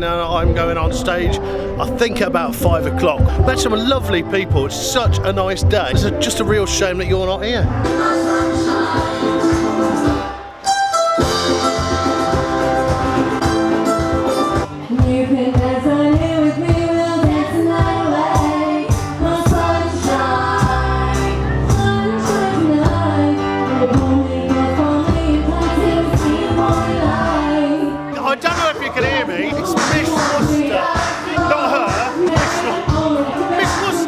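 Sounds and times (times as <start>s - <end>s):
singing over instruments: 7.7s - 10.6s, 14.8s - 34.0s.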